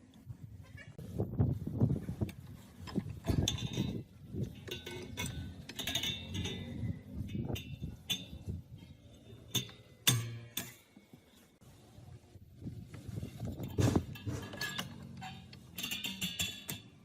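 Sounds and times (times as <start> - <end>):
metal tools clinking: 2.8 - 11.0, 13.6 - 17.0.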